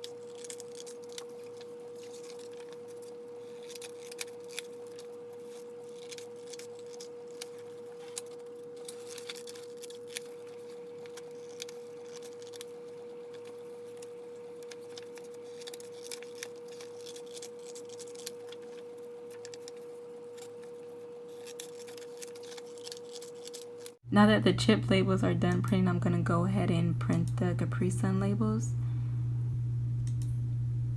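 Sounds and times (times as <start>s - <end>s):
scissors snipping paper: 0.0s - 24.0s.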